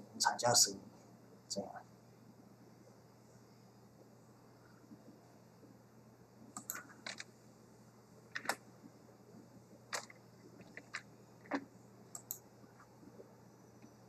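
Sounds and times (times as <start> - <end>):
faint steady hiss: 0.0 - 14.0
mouse and keyboard clicks: 6.6 - 7.3, 9.9 - 11.6.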